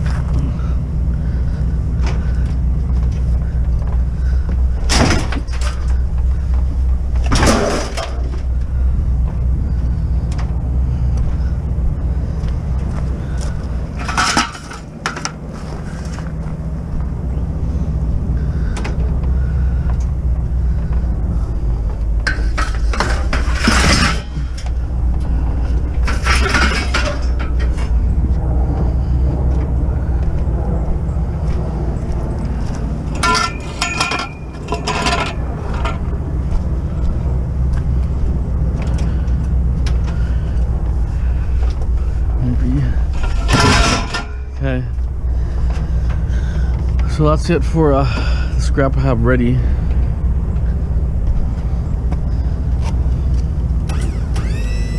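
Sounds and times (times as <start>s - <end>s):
scrap metal clanging and rattling: 0.0s - 30.2s, 31.4s - 53.5s
steady low rumble: 0.0s - 54.9s.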